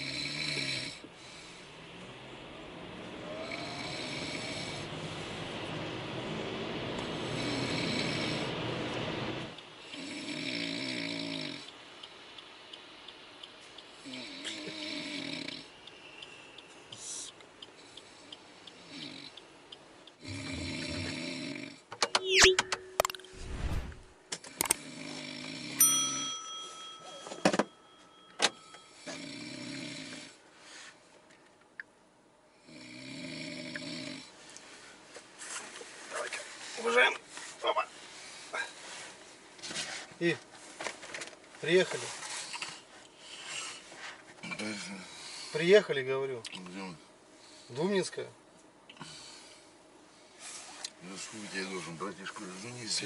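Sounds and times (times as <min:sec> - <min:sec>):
man snoring heavily: 0:00.0 - 0:01.9, 0:03.4 - 0:05.4, 0:07.1 - 0:08.7, 0:09.8 - 0:11.7, 0:14.0 - 0:15.7, 0:18.8 - 0:19.3, 0:20.2 - 0:21.9, 0:24.7 - 0:25.8, 0:29.0 - 0:30.4, 0:32.6 - 0:34.4
electronic chime: 0:22.2 - 0:23.8, 0:25.8 - 0:28.8.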